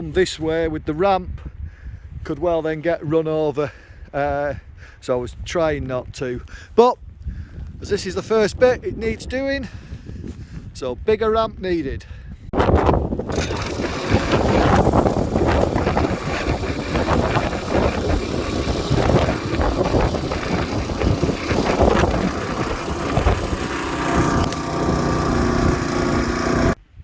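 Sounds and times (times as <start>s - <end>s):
small engine running under load: 13.2s - 26.8s.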